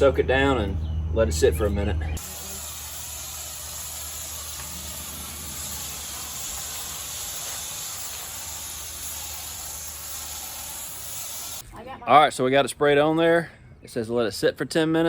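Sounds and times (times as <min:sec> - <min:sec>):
spray bottle hissing: 0:02.2 - 0:11.6.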